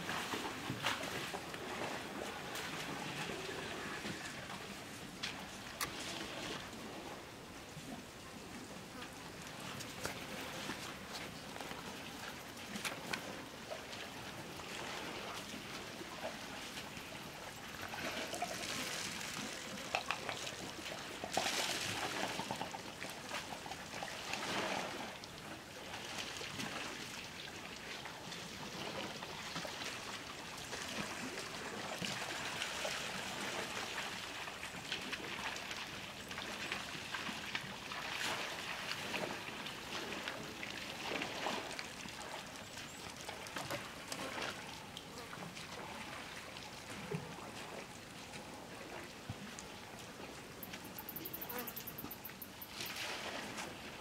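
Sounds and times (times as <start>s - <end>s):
water splashing and trickling: 0.0s - 54.0s.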